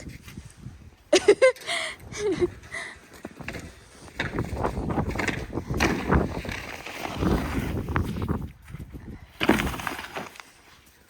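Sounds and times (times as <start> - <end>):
wind buffeting microphone: 0.0 - 1.1, 3.4 - 10.0.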